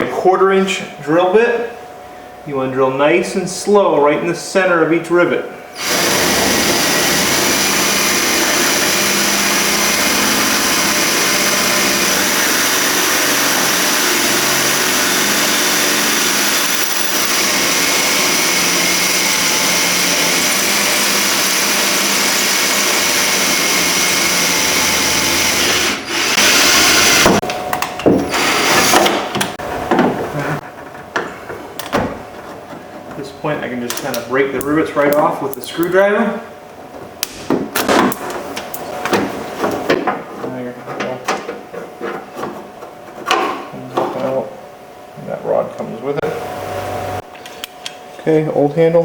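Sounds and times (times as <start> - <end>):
power drill drilling metal: 5.8 - 27.4, 28.3 - 29.2.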